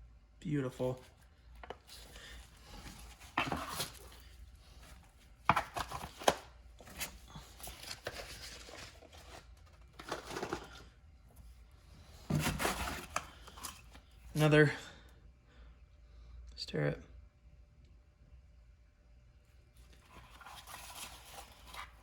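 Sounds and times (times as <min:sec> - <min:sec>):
rustling of boxes: 0:00.8 - 0:14.5, 0:19.8 - 0:22.0.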